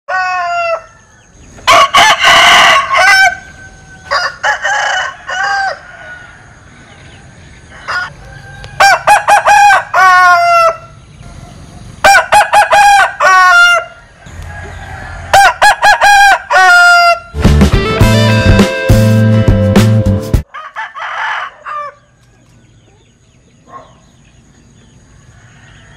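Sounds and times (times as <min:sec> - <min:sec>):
rooster crowing: 0:00.1 - 0:17.4, 0:20.4 - 0:22.4, 0:25.1 - 0:25.9
music: 0:17.3 - 0:20.4.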